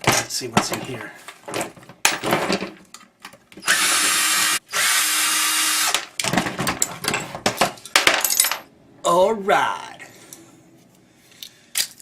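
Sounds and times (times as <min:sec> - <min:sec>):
power drill running: 0:03.6 - 0:06.0
metal parts clicking and knocking: 0:06.0 - 0:08.7, 0:11.4 - 0:12.0.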